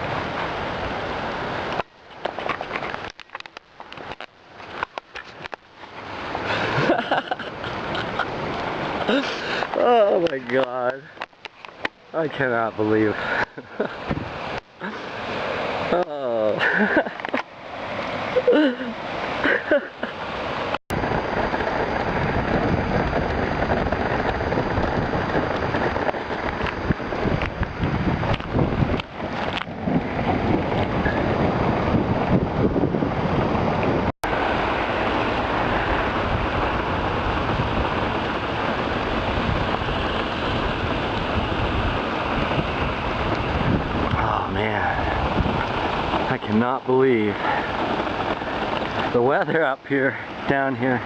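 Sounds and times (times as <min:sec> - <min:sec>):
hail and rain rushing: 0:34.3 - 0:51.0.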